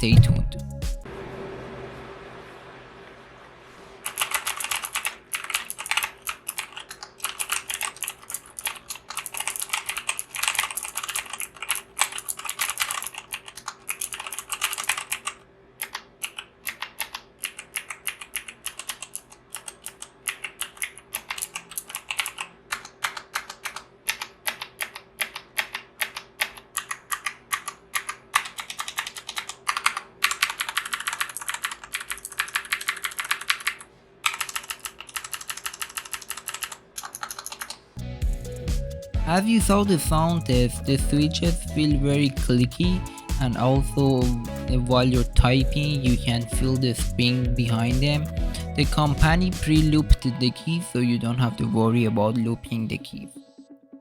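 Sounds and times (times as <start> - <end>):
clicky keyboard typing: 4.1 - 37.8.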